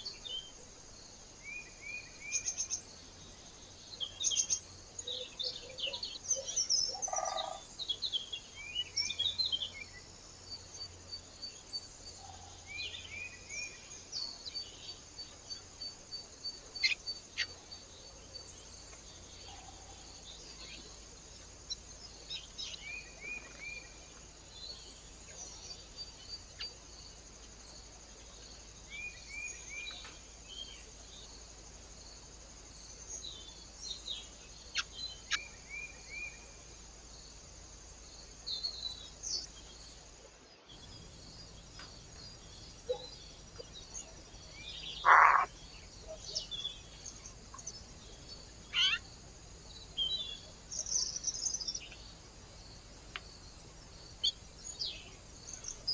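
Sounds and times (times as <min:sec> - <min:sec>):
faint high hiss: 0:00.0 - 0:55.9
small birds chirping: 0:01.4 - 0:55.9.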